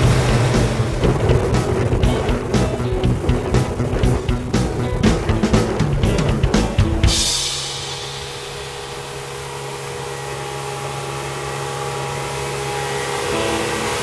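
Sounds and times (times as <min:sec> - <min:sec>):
music with drum beat: 0:00.0 - 0:09.2
outboard motor droning: 0:00.0 - 0:14.0
rushing wind and water: 0:00.0 - 0:14.0.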